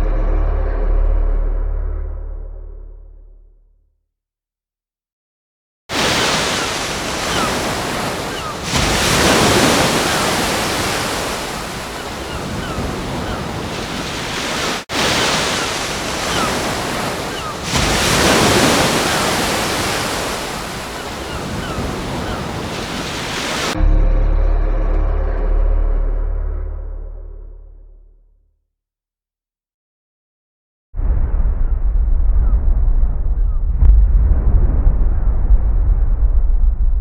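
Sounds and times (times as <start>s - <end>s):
ocean waves breaking: 5.9s - 23.8s.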